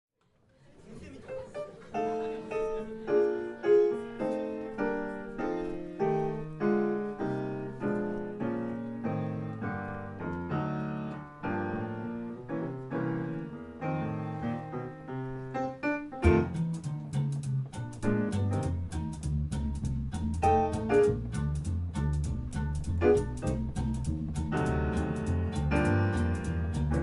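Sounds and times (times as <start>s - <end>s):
swinging solo piano: 1.6s - 16.6s, 18.0s - 19.0s, 20.4s - 21.4s, 22.8s - 27.0s.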